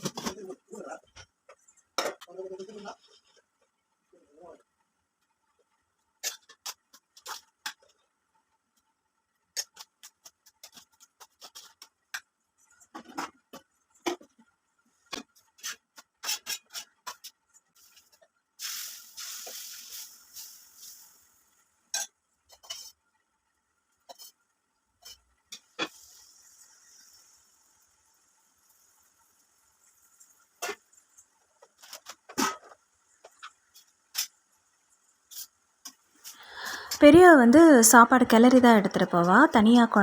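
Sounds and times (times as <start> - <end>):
burst of hiss: 18.6 - 21.2.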